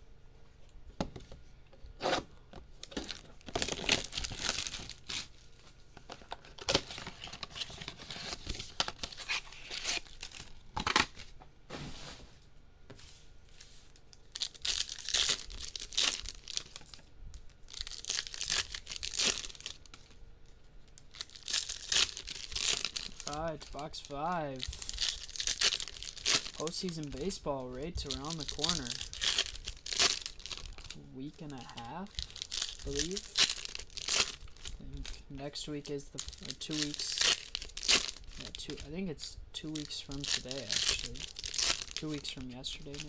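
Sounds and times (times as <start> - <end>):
wrappers ripping and crinkling: 2.8 - 11.3, 13.9 - 20.2, 20.9 - 38.9, 39.6 - 43.0
cardboard and foil snapping: 6.0 - 11.3, 39.8 - 43.0.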